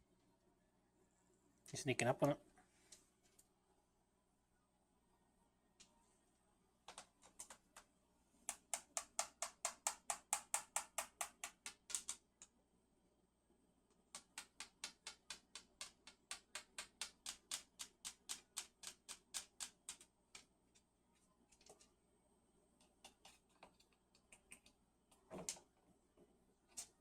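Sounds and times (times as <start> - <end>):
beak tapping on plastic: 8.5 - 12.2.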